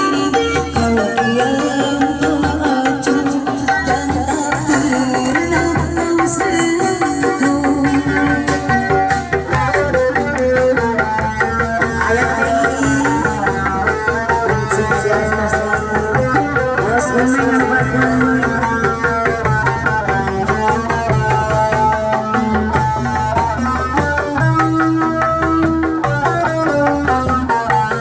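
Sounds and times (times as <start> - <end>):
steady drum rhythm: 0.0 - 28.0.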